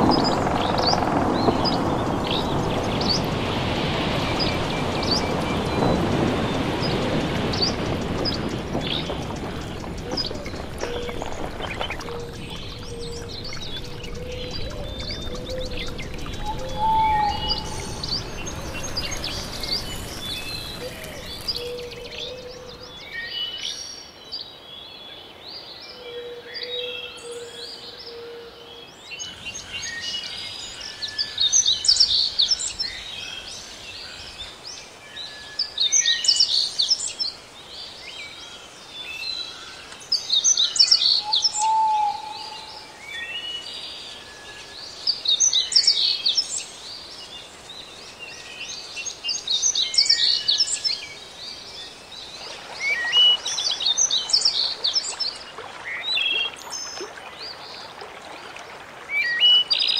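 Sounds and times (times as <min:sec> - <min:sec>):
background hiss: 0:00.0 - 0:23.9
songbirds singing: 0:00.0 - 0:58.0.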